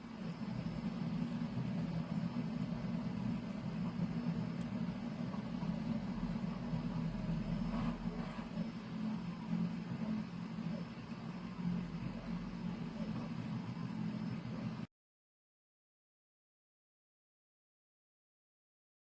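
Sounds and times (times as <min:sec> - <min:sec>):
low droning hum: 0:00.0 - 0:14.9.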